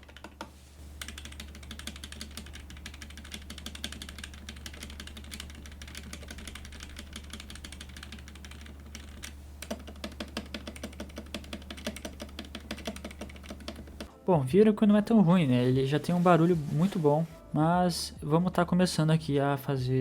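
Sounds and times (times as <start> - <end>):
mechanical keyboard typing: 0.0 - 14.1
steady low hum: 0.0 - 14.1.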